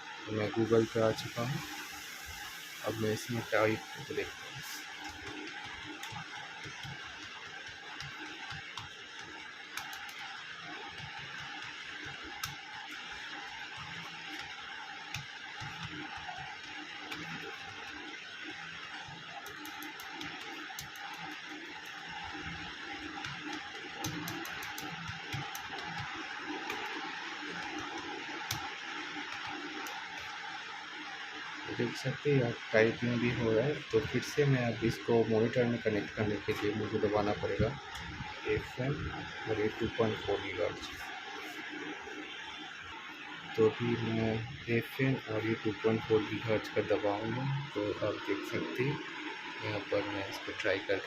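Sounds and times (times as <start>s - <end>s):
steady background hiss: 0.0s - 5.0s.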